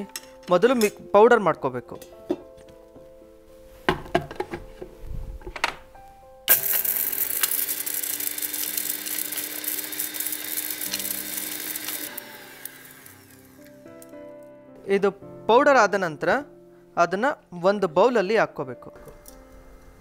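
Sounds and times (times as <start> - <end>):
mixer grinder running: 6.5 - 13.7.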